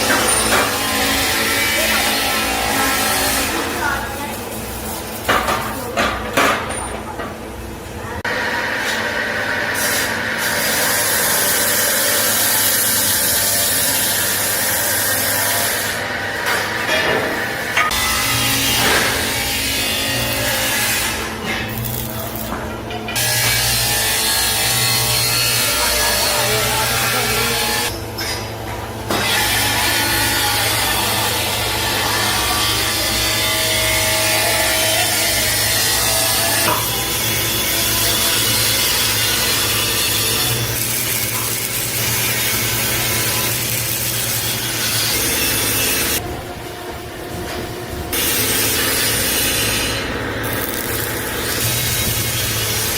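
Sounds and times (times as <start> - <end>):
power tool cutting steel: 0.0 - 4.9, 8.3 - 22.6, 23.2 - 28.0, 29.1 - 46.2, 48.1 - 52.9
loud hiss of workshop machinery: 8.2 - 22.3.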